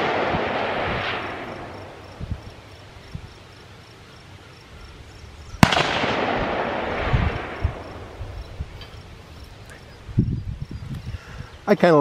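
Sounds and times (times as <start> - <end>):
rifle shot echoing: 0.0 - 2.1, 5.6 - 8.3.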